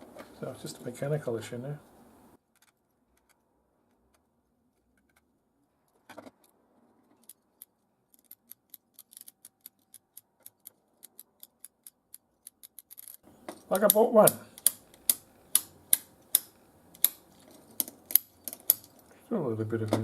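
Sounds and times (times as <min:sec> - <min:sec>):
small handling clicks: 0:07.2 - 0:19.1.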